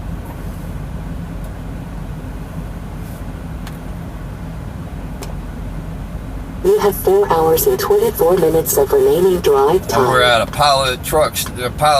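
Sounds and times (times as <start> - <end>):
engine idling: 0.0 - 11.9.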